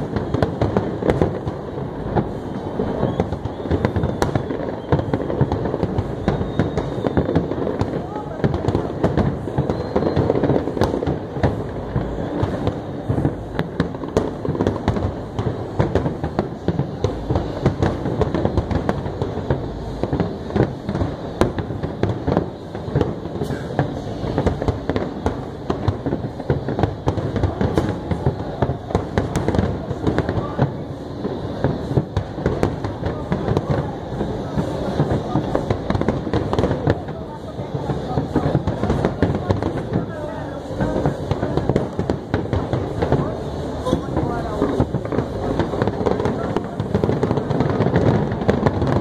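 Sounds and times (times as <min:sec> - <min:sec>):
fireworks bangs and crackling: 0:00.0 - 0:49.0.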